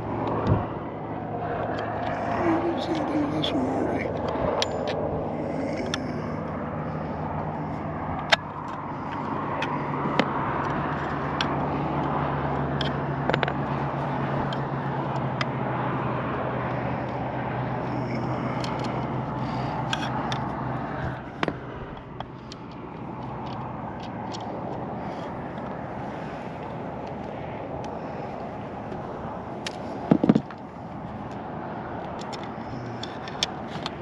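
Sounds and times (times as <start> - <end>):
wind on microphone: 0.0 - 3.3
engine-like hum: 0.0 - 34.0
hands clicking and tapping parts: 19.8 - 24.5, 32.0 - 34.0.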